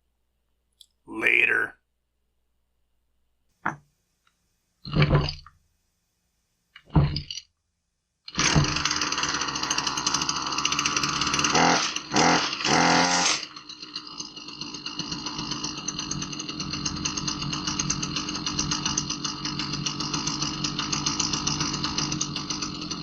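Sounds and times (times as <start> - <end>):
string trimmer engine running: 8.3 - 23.0.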